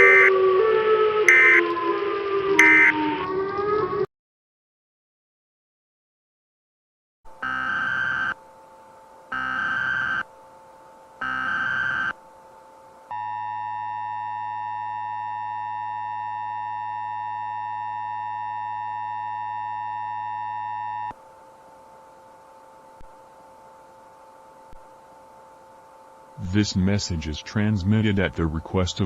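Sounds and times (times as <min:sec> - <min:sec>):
digital data bursts: 0:00.0 - 0:00.3
two-tone attention signal: 0:00.0 - 0:00.4, 0:01.3 - 0:01.7, 0:02.6 - 0:03.2
faint constant hum: 0:07.3 - 0:29.0.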